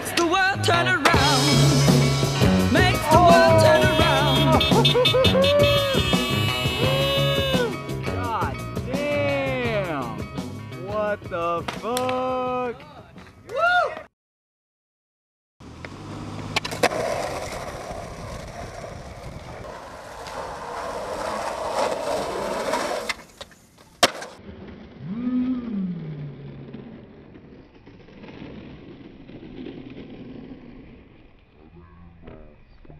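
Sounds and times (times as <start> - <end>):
skateboard wheels rolling: 15.6 - 32.6
skateboard clacks: 15.8 - 24.4.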